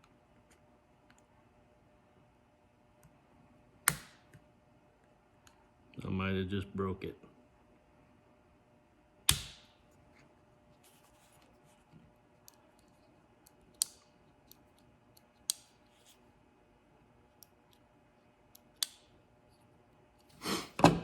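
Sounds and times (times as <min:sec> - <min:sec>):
plastic switch snapping and clicking: 0:03.9 - 0:04.3, 0:09.3 - 0:09.6.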